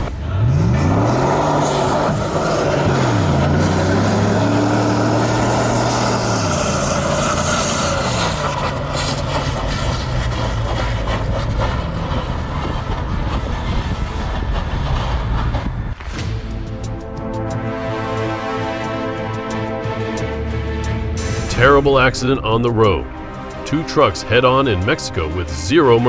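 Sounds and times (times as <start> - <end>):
heavy vehicle engine: 0.0 - 26.0
road rumble: 0.0 - 26.0
music: 16.0 - 26.0.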